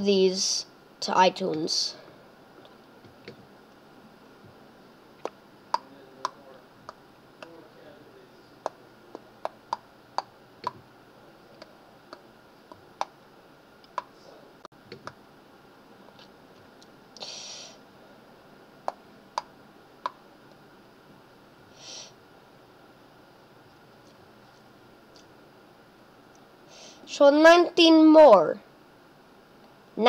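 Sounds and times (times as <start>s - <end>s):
computer mouse clicking: 13.9s - 14.1s.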